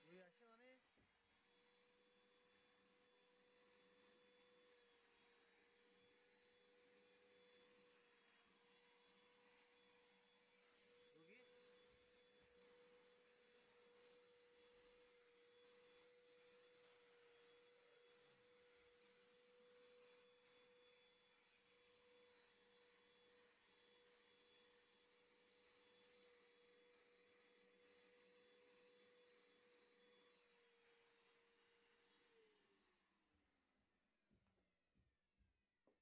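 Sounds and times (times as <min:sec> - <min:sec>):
faint vacuum cleaner motor whine: 0:00.0 - 0:33.7.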